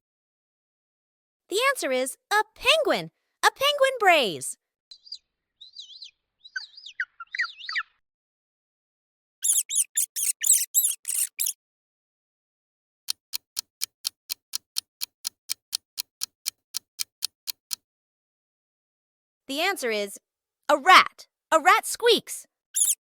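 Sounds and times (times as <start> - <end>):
high chirps: 9.4 - 11.6, 22.8 - 23.0
rat squeaking: 9.4 - 11.6, 22.8 - 23.0
clock ticking: 13.1 - 17.8.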